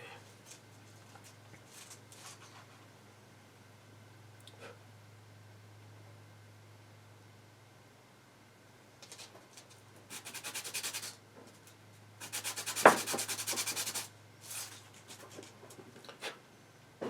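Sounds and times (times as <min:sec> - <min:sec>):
metal rubbing on sandpaper: 0:10.1 - 0:11.2, 0:12.2 - 0:15.5.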